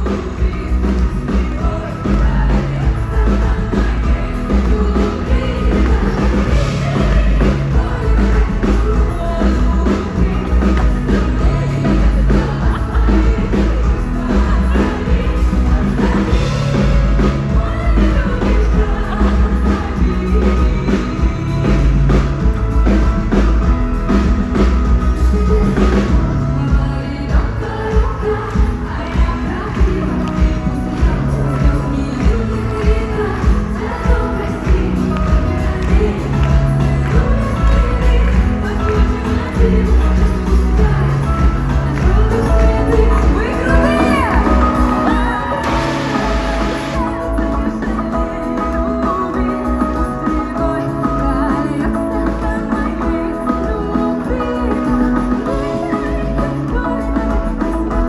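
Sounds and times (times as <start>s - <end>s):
live rock band playing: 0.0s - 58.0s
person singing: 0.0s - 58.0s.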